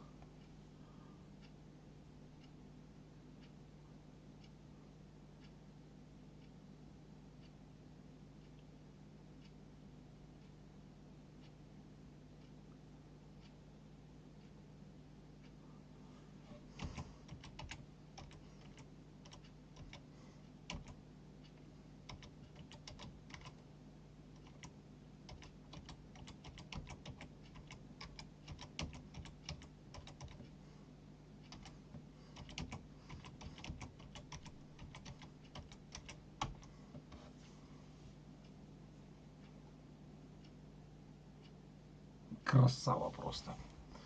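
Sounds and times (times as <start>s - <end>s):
steady low hum: 0.0s - 44.0s
computer keyboard typing: 16.7s - 21.0s, 22.0s - 23.6s, 24.4s - 30.6s, 31.5s - 36.7s.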